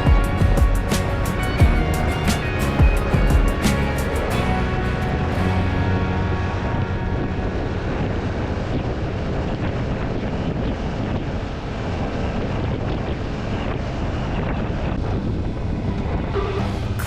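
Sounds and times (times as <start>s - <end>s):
motorcycle engine: 0.0s - 8.3s
road noise: 0.0s - 17.0s
wind buffeting microphone: 0.0s - 17.0s.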